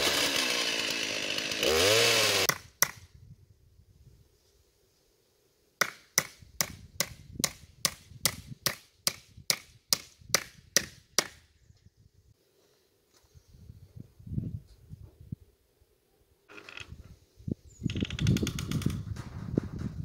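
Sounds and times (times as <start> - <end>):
hand tool striking wood: 5.8 - 11.4.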